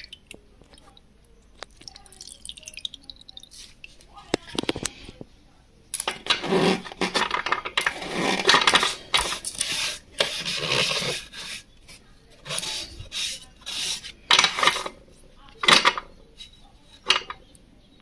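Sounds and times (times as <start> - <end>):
cloth scrubbing metal pan: 6.1 - 15.0.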